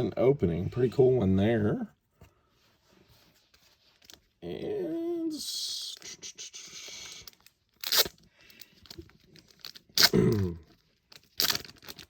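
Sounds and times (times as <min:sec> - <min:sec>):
wrapper tearing and crinkling: 0:07.2 - 0:12.0.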